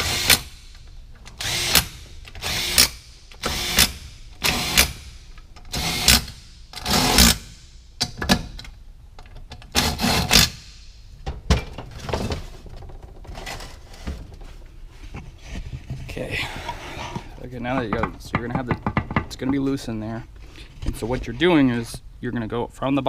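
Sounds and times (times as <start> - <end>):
power tool driving bolts: 0.0 - 8.7, 9.6 - 11.0
metal parts clicking and knocking: 17.7 - 19.8.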